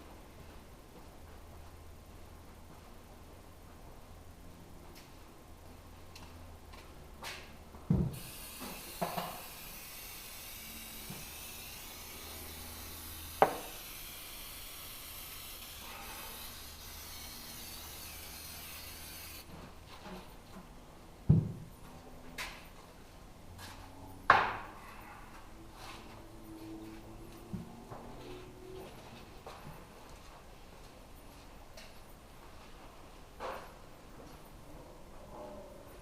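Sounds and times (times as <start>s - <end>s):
steady hiss: 8.1s - 19.5s.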